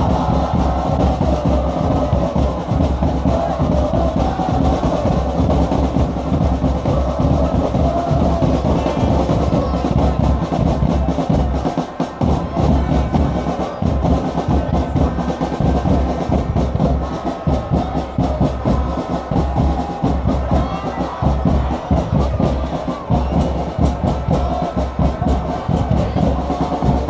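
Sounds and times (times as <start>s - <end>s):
drums beating: 0.0s - 27.0s
loud stadium crowd: 0.0s - 27.0s.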